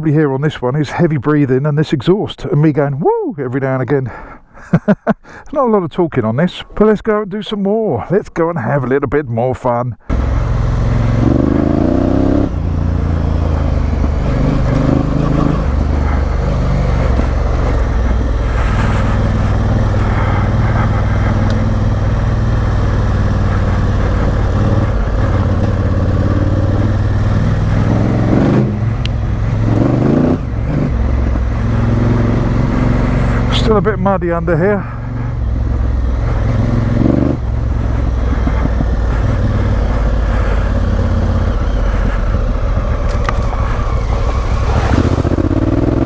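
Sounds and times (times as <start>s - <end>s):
motorcycle engine revving: 10.1s - 46.0s.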